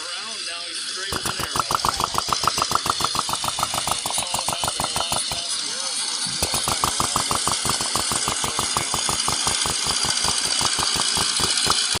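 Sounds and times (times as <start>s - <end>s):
tractor engine popping: 1.1s - 5.6s, 6.4s - 12.0s.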